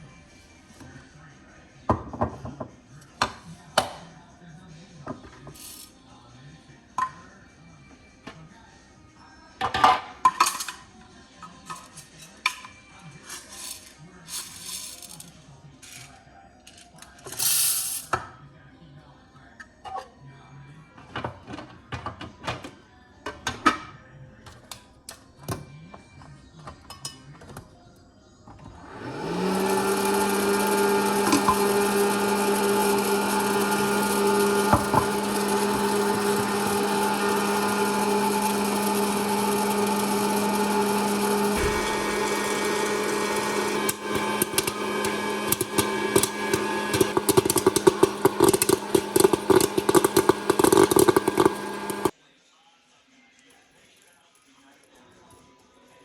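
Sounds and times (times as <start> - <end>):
popcorn machine blower humming: 28.7 - 52.1
popcorn kernels popping: 29.4 - 52.1.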